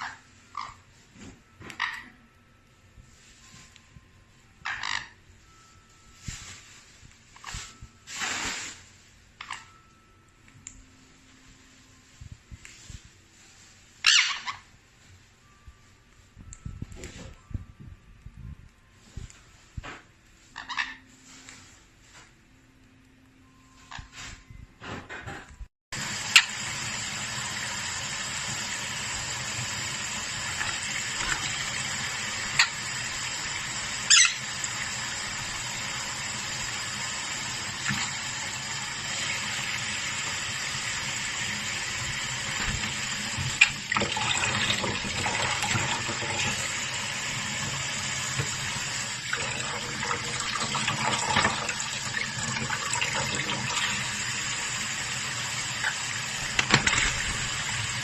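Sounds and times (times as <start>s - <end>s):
running water: 26.0s - 58.0s.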